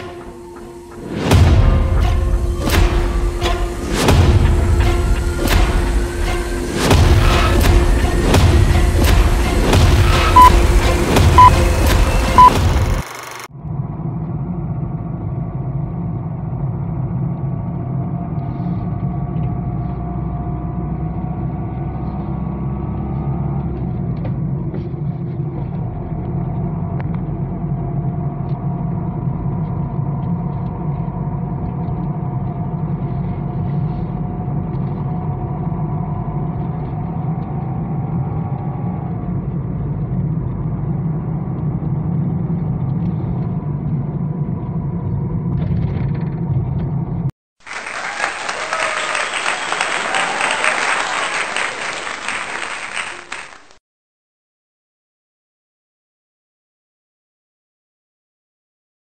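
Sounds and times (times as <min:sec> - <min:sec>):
road vehicle rumble: 0:00.0 - 0:47.3.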